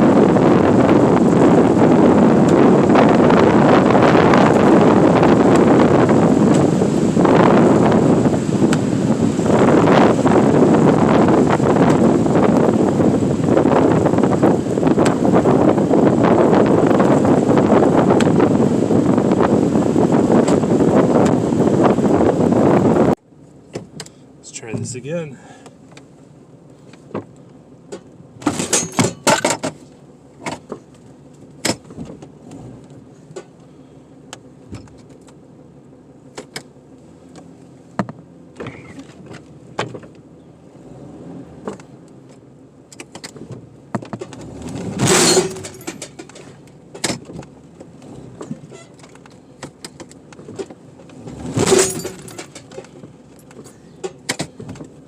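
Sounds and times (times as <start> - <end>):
loud scraping rushes: 44.4 - 46.2, 51.2 - 52.7.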